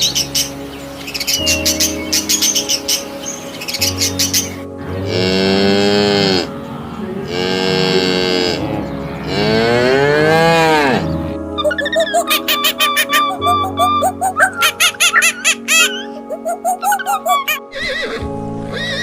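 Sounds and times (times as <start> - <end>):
soft background music: 0.0 - 19.0
cow mooing: 5.0 - 6.5, 7.2 - 11.1.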